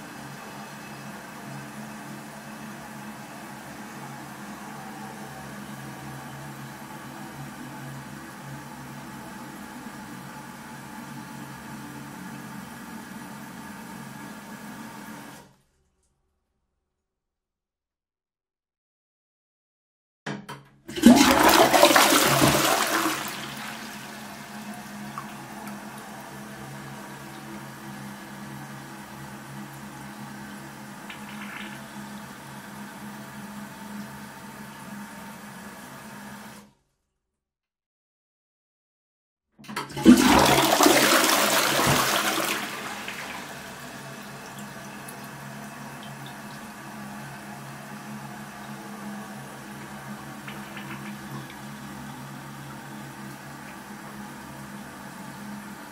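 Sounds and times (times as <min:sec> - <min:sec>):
toilet flushing: 0:00.0 - 0:15.6, 0:20.9 - 0:36.6, 0:39.6 - 0:55.9
toilet tank refilling hiss: 0:20.9 - 0:34.7, 0:39.7 - 0:55.9
water running: 0:20.9 - 0:35.6, 0:39.9 - 0:55.9.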